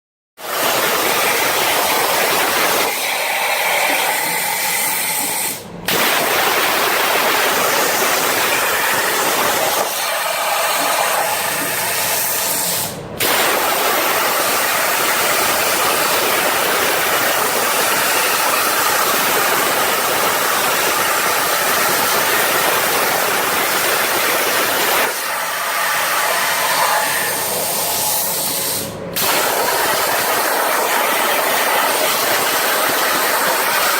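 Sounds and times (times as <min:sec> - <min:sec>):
cnc machine hissing: 0:21.8 - 0:33.9.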